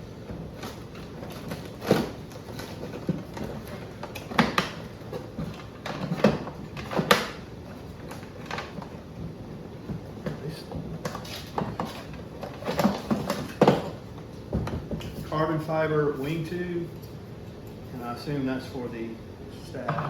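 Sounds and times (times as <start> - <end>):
parts and packing being handled: 0.0 - 15.3.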